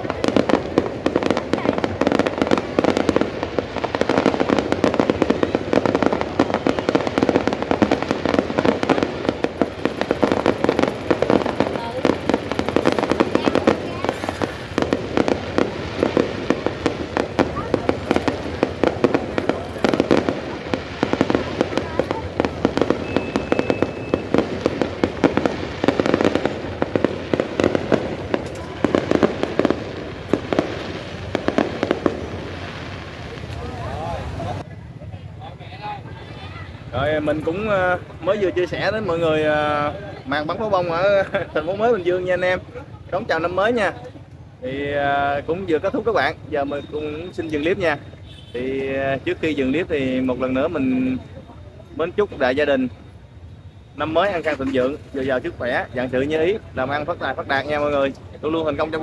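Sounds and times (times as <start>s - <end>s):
fireworks bangs and crackles: 0.0s - 59.0s.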